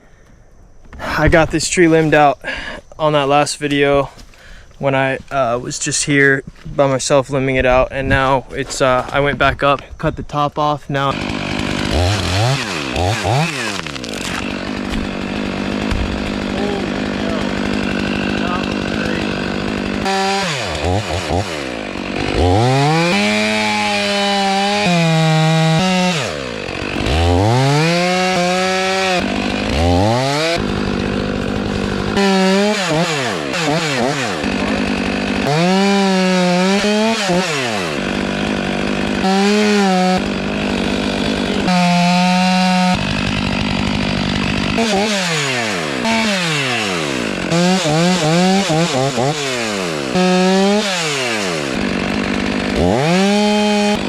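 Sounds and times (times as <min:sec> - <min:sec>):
chainsaw revving and cutting wood: 0:10.9 - 0:54.0.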